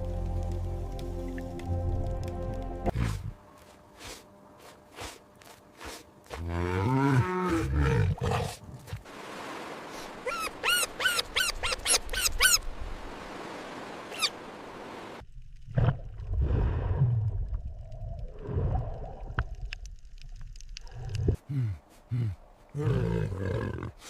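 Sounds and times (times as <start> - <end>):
high animal calls: 10.2 - 12.6.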